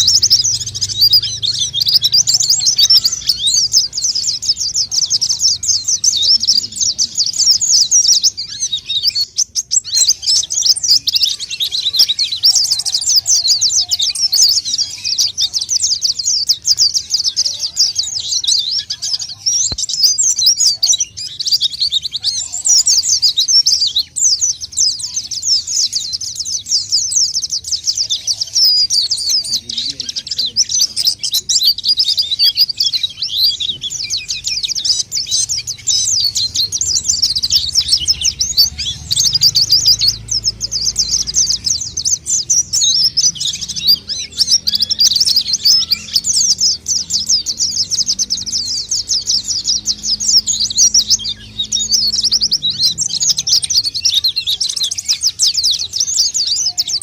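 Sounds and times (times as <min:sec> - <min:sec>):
birds twittering: 0:00.0 - 0:57.0.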